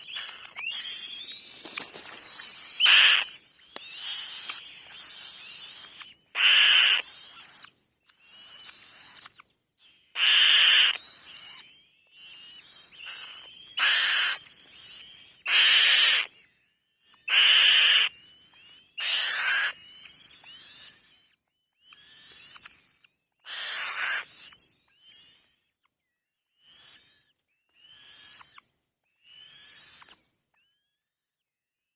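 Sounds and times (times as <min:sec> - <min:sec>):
nestling birds harsh screeches: 0:00.0 - 0:07.7, 0:10.0 - 0:11.6, 0:12.6 - 0:16.3, 0:17.2 - 0:18.2, 0:19.0 - 0:20.6, 0:23.4 - 0:24.6
thin chirping calls: 0:00.0 - 0:16.3.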